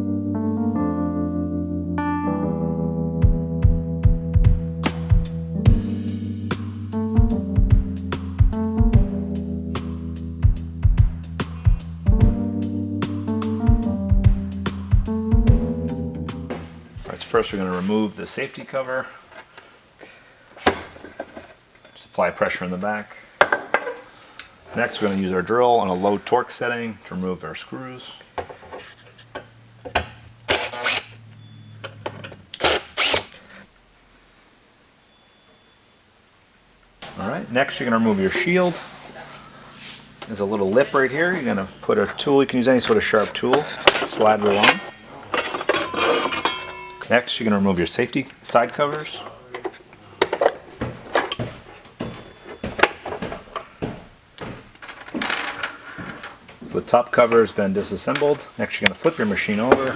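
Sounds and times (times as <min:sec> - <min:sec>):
cordless drill motor humming: 0:32.6 - 0:33.4
plastic covers clicking and knocking: 0:49.0 - 0:51.4.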